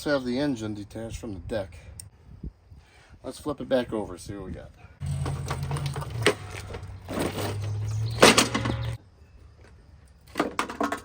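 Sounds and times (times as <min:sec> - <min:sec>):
metal mower deck clattering: 0:05.0 - 0:09.0.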